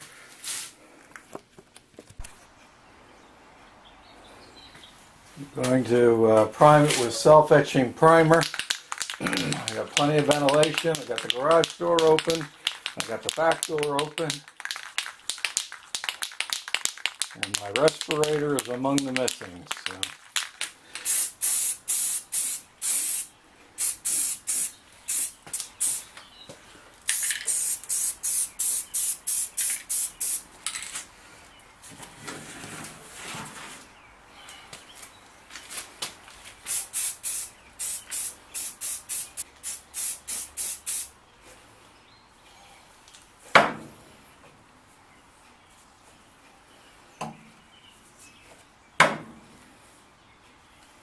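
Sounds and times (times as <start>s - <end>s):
aerosol can spraying: 8.4s - 14.8s, 21.0s - 26.1s, 27.1s - 30.4s, 36.7s - 41.1s.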